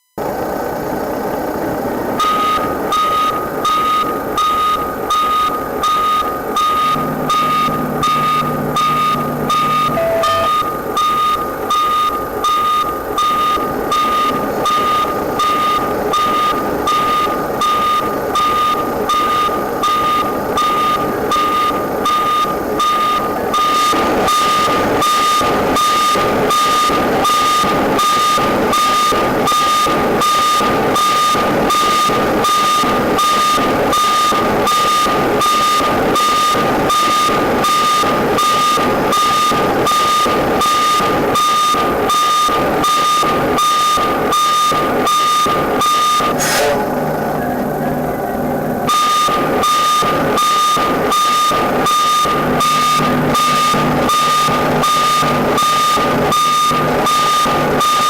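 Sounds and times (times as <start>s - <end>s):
reversing alarm beeping: 2.2s - 58.0s
low hum: 4.9s - 11.3s, 46.3s - 49.6s.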